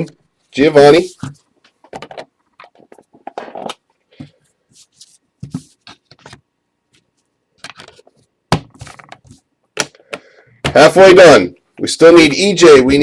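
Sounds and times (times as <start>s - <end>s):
cards and plastic holders rustling: 0.6s - 10.9s.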